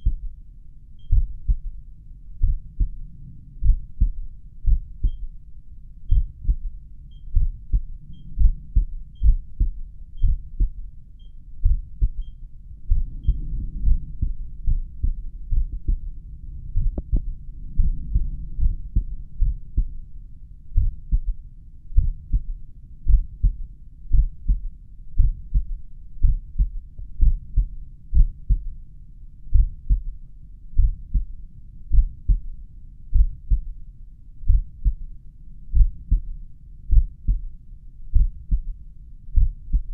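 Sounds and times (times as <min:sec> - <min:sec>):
heartbeat through stethoscope: 0:00.0 - 0:00.4, 0:01.0 - 0:05.4, 0:06.1 - 0:28.8, 0:29.5 - 0:30.2, 0:30.8 - 0:32.5, 0:33.1 - 0:33.8, 0:34.4 - 0:35.1, 0:35.7 - 0:37.5, 0:38.1 - 0:39.9
faint high beeps: 0:05.0 - 0:05.4, 0:07.0 - 0:09.5, 0:11.2 - 0:11.4, 0:12.2 - 0:12.5, 0:13.2 - 0:13.5.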